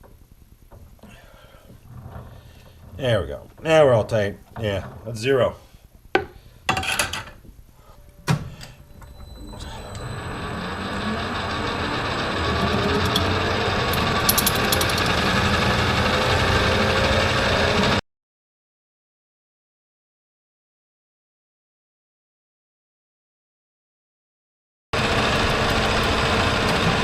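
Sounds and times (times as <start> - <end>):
lathe spindle running: 8.8 - 18.0, 25.0 - 27.0
lathe click: 9.8 - 16.6.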